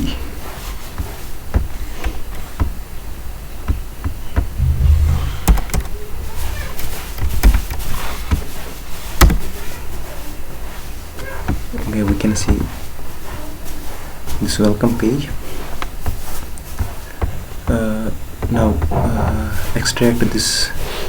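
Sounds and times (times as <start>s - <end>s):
heavy low rumble: 4.5s - 7.1s
low hum: 4.6s - 7.1s.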